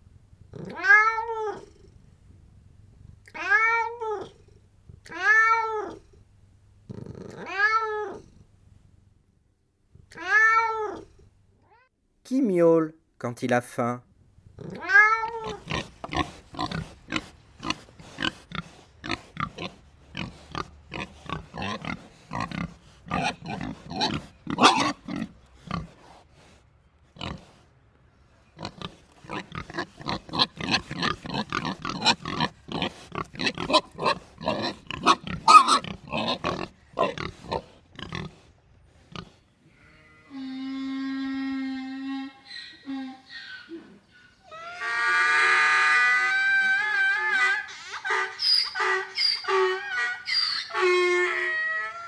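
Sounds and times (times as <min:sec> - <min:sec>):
pigs grunting and squealing: 0:00.5 - 0:01.8, 0:14.6 - 0:26.0, 0:28.6 - 0:38.5, 0:39.1 - 0:52.0.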